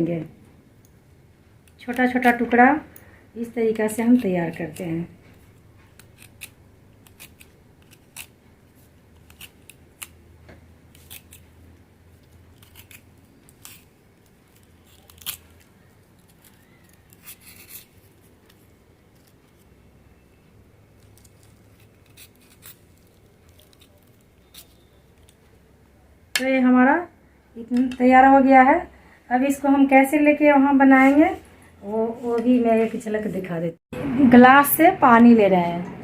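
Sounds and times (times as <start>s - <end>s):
stems being snipped: 9.2s - 11.5s, 14.5s - 19.7s.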